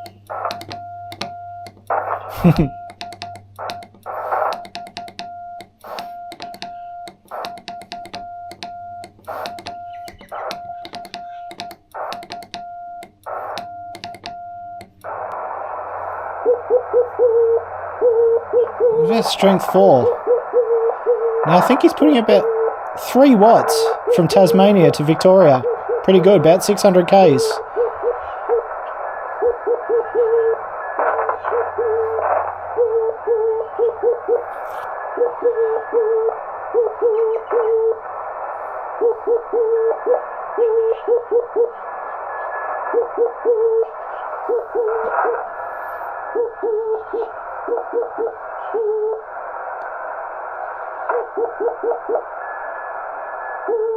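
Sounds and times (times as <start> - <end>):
morse code tone: 0.0 - 15.3, 16.4 - 38.0
radio receiver hiss: 0.0 - 20.6, 21.3 - 40.7, 41.5 - 53.8
chirpy morse signals: 0.0 - 38.1, 38.9 - 49.7.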